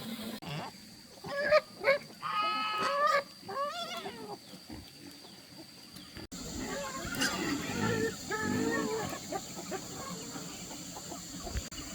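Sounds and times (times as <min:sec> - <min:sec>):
geese honking: 0:06.4 - 0:11.9.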